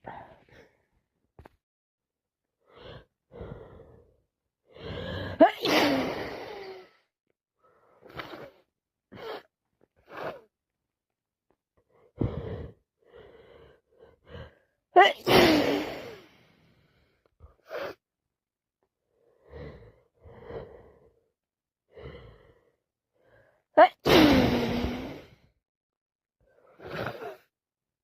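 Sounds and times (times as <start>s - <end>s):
gasping breath: 2.6s - 5.4s, 21.9s - 23.6s
woman sneezing: 5.4s - 6.4s, 15.0s - 16.2s, 23.8s - 25.1s.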